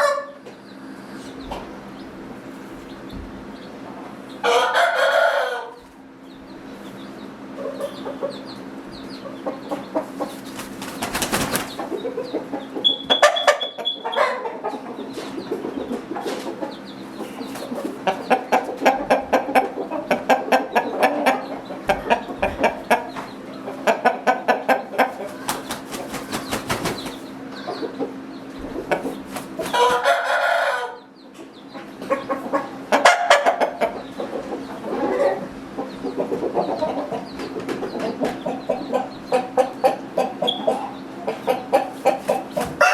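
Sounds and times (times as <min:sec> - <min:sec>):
roosters crowing: 0:00.0 - 0:00.4, 0:04.4 - 0:06.0, 0:28.9 - 0:31.2, 0:41.6 - 0:42.9
chickens clucking: 0:00.0 - 0:42.9.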